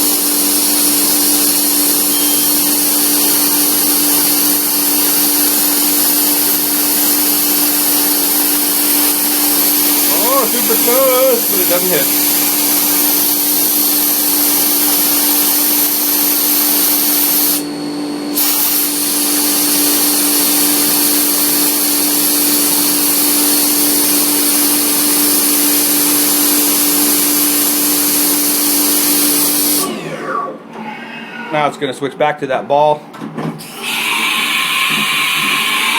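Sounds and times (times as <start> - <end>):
air blast hiss: 6.4 - 17.6, 18.3 - 19.7.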